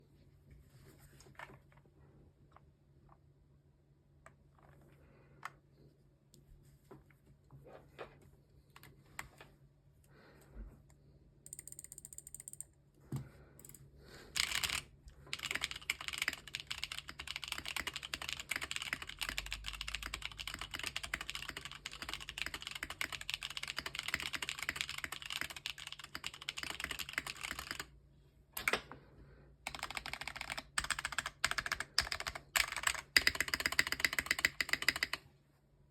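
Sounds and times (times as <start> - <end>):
mechanical keyboard typing: 11.5 - 12.7, 14.4 - 27.9, 29.7 - 35.2.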